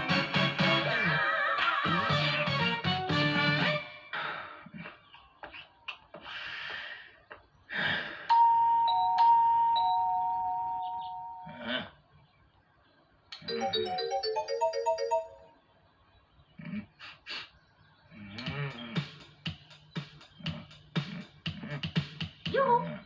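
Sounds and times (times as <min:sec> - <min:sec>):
two-tone doorbell chime: 0:08.3 - 0:11.5.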